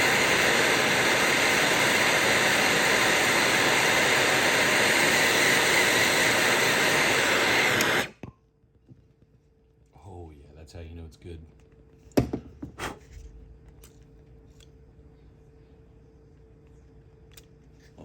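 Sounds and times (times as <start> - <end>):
heat gun blowing: 0.0 - 8.2.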